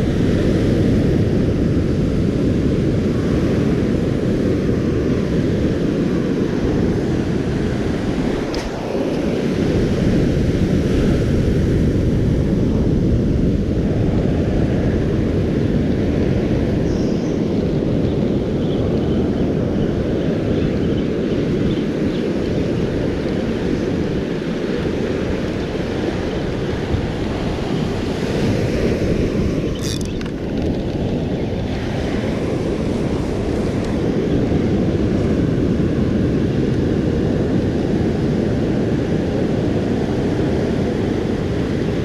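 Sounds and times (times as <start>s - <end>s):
ocean surf on beach: 0.0s - 42.0s
wind buffeting microphone: 0.0s - 42.0s.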